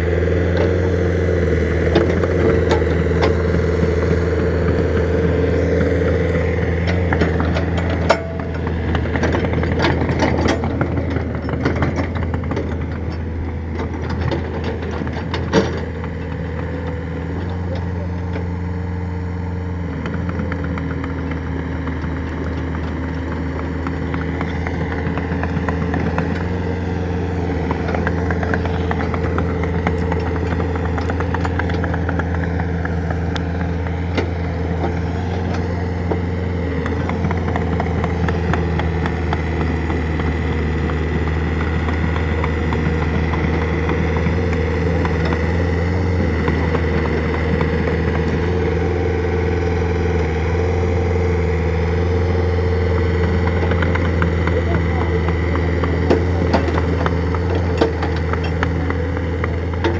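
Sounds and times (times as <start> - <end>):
excavator diesel engine running: 0.0 - 59.9
metal clanks and clicks: 6.8 - 18.5.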